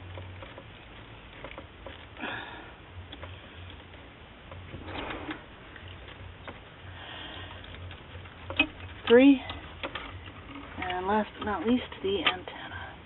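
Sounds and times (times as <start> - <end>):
low steady hum: 0.0 - 13.0
short rustling scrapes: 4.7 - 5.8.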